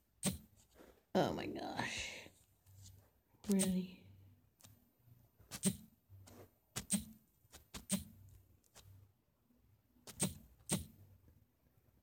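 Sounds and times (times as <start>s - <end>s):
faint low hum: 0.0s - 12.0s
computer mouse clicking: 3.4s - 3.8s, 5.5s - 8.9s, 10.1s - 11.0s.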